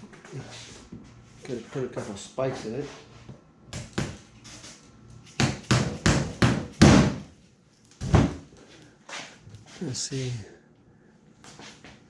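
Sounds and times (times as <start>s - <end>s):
hammer knocking spikes: 5.4s - 7.2s.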